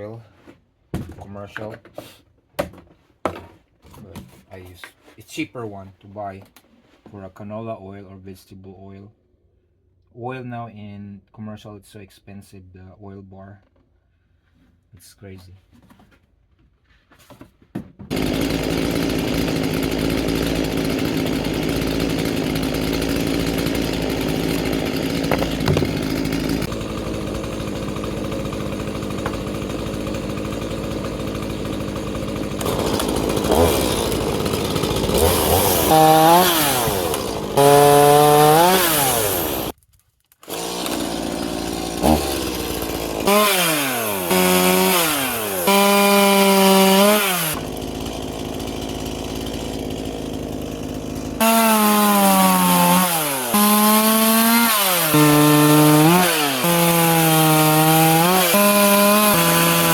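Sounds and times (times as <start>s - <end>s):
gas chainsaw running and revving: 18.1s - 39.8s, 40.4s - 59.9s.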